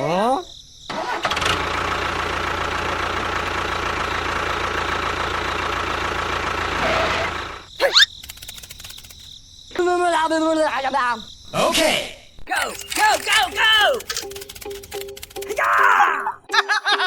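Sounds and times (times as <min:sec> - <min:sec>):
small engine running: 0:00.9 - 0:09.3, 0:12.6 - 0:15.6.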